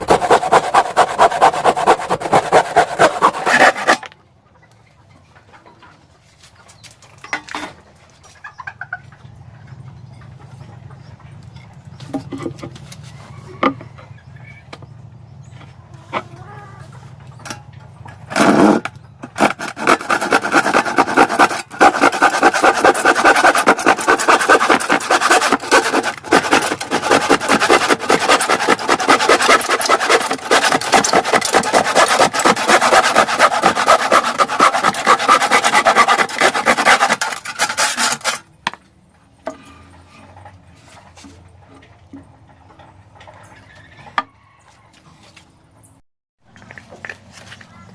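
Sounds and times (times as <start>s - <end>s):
hand saw cutting wood: 0.0s - 4.1s, 18.3s - 38.5s.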